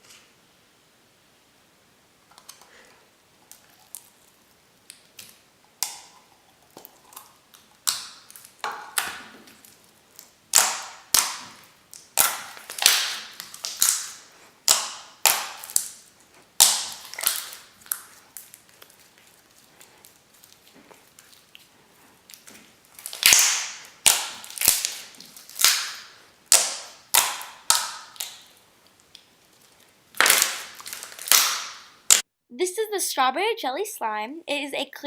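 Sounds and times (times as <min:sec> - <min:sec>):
slime crackling pops: 0:03.5 - 0:21.7, 0:22.3 - 0:29.3, 0:30.1 - 0:32.2.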